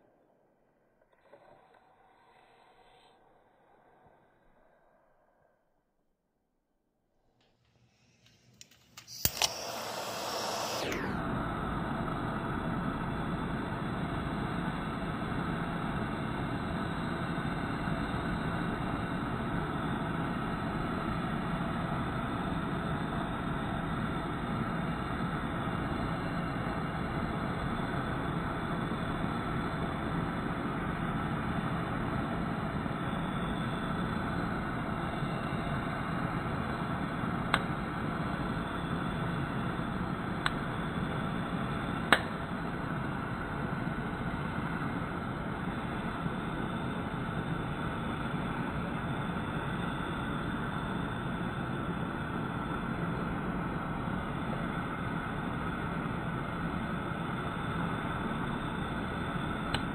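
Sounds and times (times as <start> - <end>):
gas burner flame hissing: 7.6 - 59.9
sharp clicks: 8.2 - 10.1.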